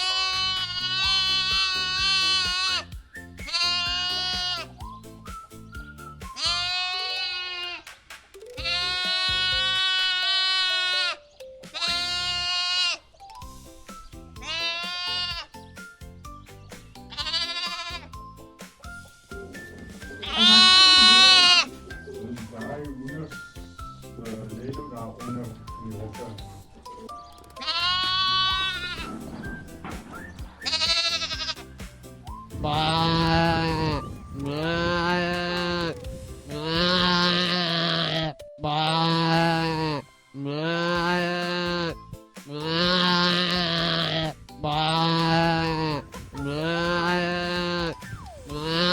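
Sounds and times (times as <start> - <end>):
farm animal bleating: 0.0 - 4.9, 6.3 - 7.9, 8.6 - 13.3, 14.4 - 15.7, 17.0 - 18.4, 20.2 - 22.6, 27.5 - 29.6, 30.5 - 31.6, 32.6 - 48.9
light background music: 0.0 - 48.9.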